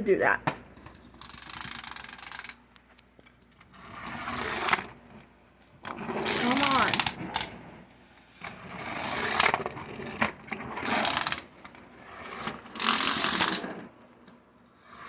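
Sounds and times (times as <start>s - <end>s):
toy pullback motor buzzing: 0.8s - 2.6s, 6.2s - 7.5s, 8.6s - 10.2s, 10.8s - 13.8s.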